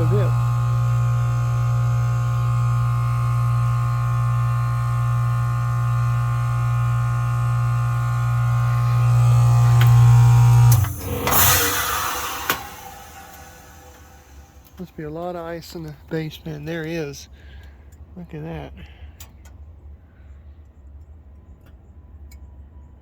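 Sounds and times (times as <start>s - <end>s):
hissing rush of refrigerant: 0.0s - 16.2s
compressor humming: 0.0s - 20.6s
steady tones: 8.2s - 17.3s.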